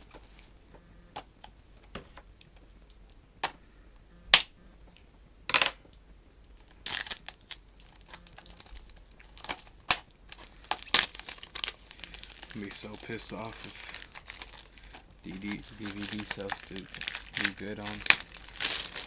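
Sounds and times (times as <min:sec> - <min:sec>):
plastic wrapping crinkling: 0:06.6 - 0:19.0.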